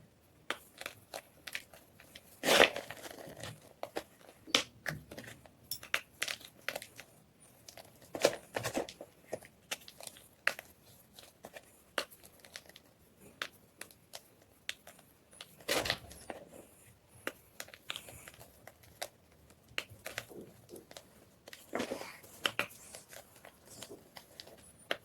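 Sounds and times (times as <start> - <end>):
chalk crunching and crumbling: 0.5 - 7.1.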